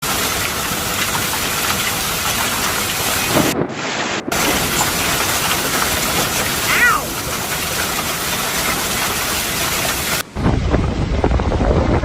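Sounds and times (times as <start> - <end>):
heavy rain: 0.0 - 12.0
storm wind: 3.2 - 7.4, 10.2 - 12.0.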